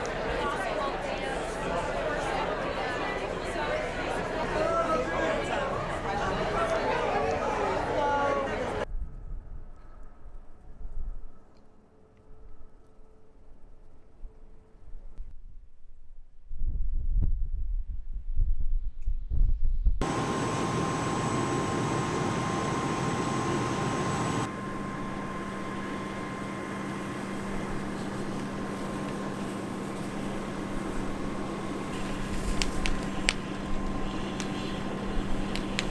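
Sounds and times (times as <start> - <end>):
fan rushing with hum: 20.0 - 35.9
sharp clicks: 32.0 - 35.9.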